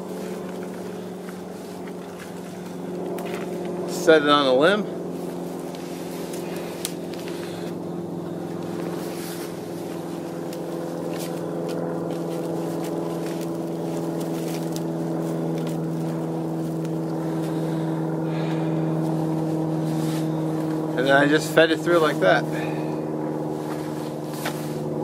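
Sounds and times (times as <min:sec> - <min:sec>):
distant road traffic drone: 0:00.0 - 0:25.0.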